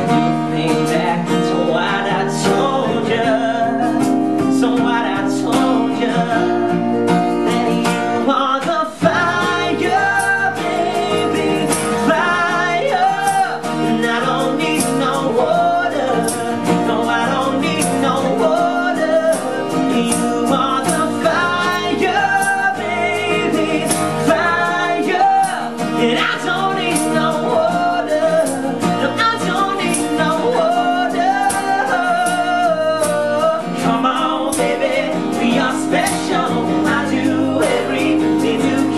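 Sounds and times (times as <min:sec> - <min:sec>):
guitar: 0:00.0 - 0:38.9
person singing: 0:00.0 - 0:38.9
steady drum beat: 0:09.0 - 0:38.9.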